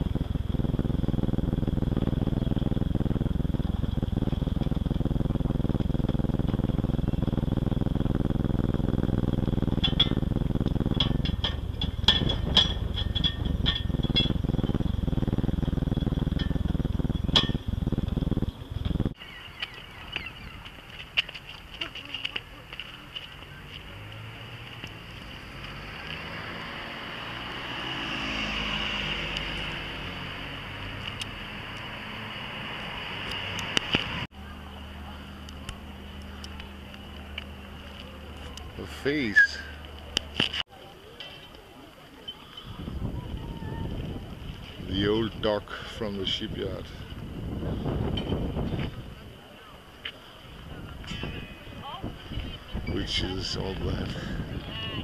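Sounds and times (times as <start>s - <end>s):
engine chugging: 0.0s - 19.2s, 33.5s - 40.6s.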